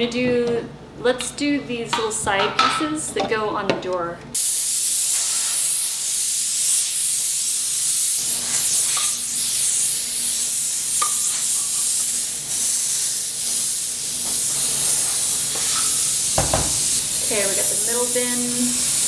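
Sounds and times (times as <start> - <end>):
steam cleaner hissing: 4.4 - 19.0.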